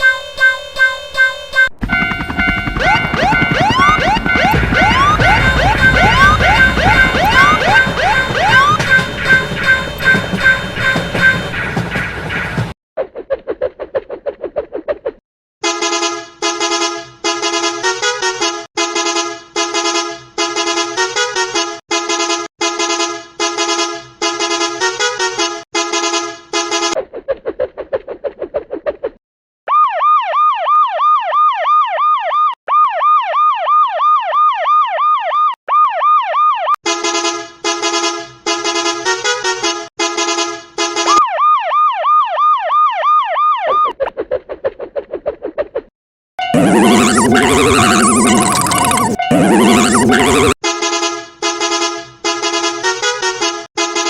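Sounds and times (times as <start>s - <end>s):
yelping siren: 0.0s - 11.5s, 29.7s - 36.8s, 41.1s - 44.0s, 46.4s - 50.6s
horn blasts: 0.0s - 12.0s, 15.6s - 27.0s, 36.8s - 41.2s.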